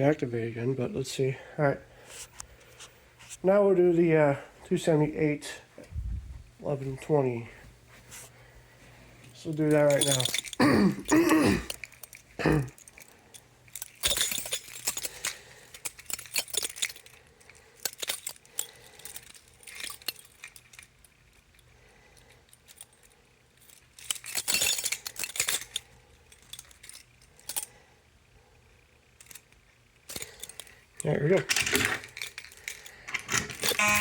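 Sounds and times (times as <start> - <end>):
small hard parts clinking: 9.2 - 27.8, 29.0 - 34.0.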